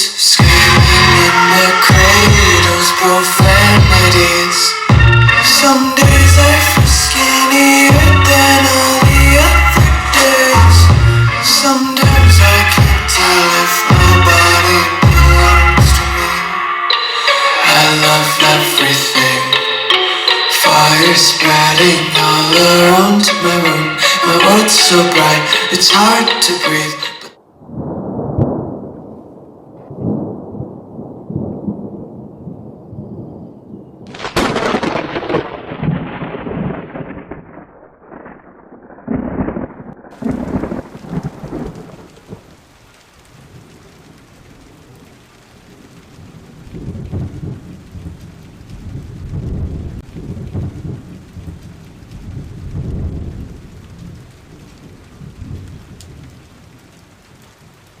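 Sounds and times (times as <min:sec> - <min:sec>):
steady rain hiss: 0:00.0 - 0:32.3, 0:39.2 - 0:58.0
rolling thunder: 0:00.4 - 0:05.4, 0:27.4 - 0:57.8
sharp thunder crack: 0:00.4 - 0:05.4, 0:27.6 - 0:42.5, 0:46.7 - 0:56.4.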